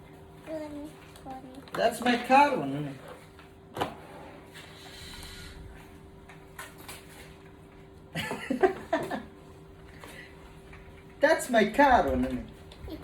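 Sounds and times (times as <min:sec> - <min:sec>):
young child's voice: 0:00.5 - 0:01.7, 0:12.8 - 0:13.0.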